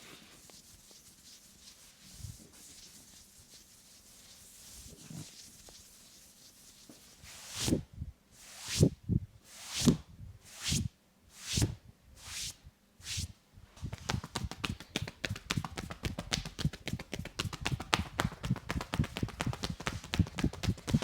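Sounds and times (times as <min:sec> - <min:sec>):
hands swishing rubs on skin: 0:00.0 - 0:07.8, 0:08.4 - 0:21.0
rhythmic tapping slaps: 0:13.9 - 0:21.0.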